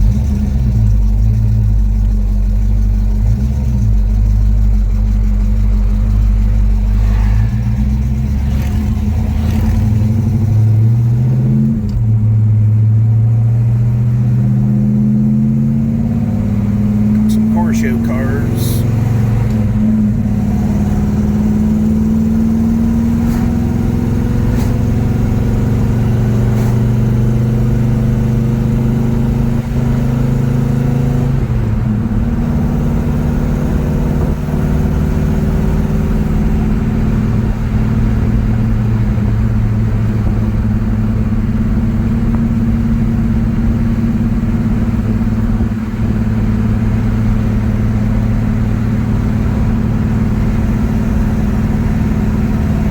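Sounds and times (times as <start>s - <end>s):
car engine running while driving: 0.0s - 52.9s.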